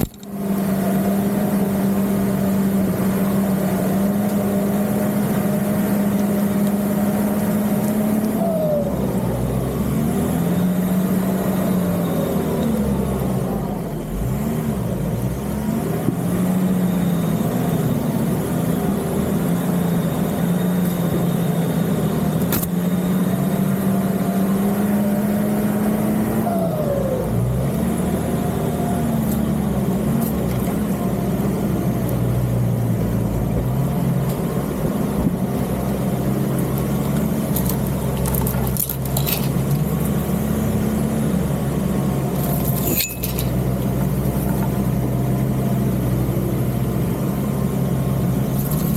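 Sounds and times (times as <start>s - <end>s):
engine running at low revs: 0.0s - 48.9s.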